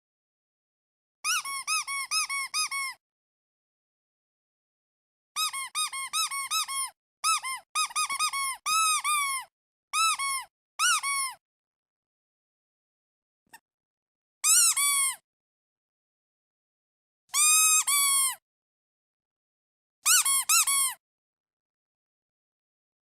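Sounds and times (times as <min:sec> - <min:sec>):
toy duck squeaking: 0:01.2 - 0:03.0, 0:05.4 - 0:11.4, 0:14.4 - 0:15.2, 0:17.3 - 0:18.4, 0:20.0 - 0:21.0.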